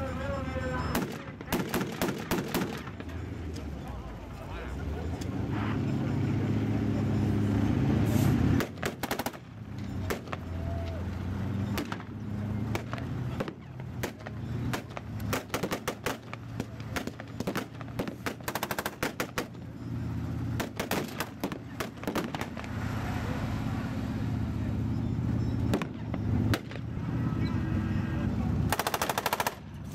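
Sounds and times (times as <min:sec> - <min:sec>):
heavy vehicle engine: 0:00.0 - 0:29.9
rifle shots: 0:00.9 - 0:03.0, 0:08.6 - 0:09.4, 0:12.7 - 0:19.6, 0:20.6 - 0:22.6, 0:28.7 - 0:29.7
machine-gun bursts: 0:28.7 - 0:29.6.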